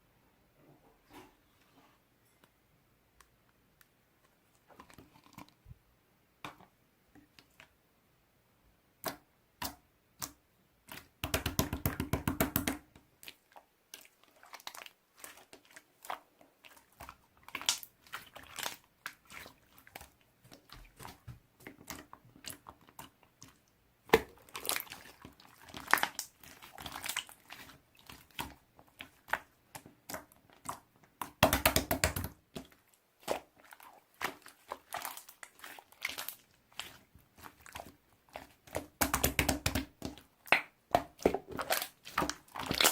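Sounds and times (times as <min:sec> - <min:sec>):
squishy ball crackling and squishing: 0:32.2 - 0:42.9.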